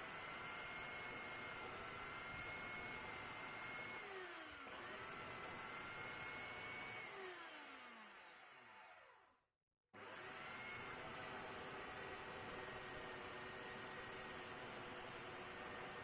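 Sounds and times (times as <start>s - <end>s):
electric chainsaw motor whining: 0.0s - 9.3s.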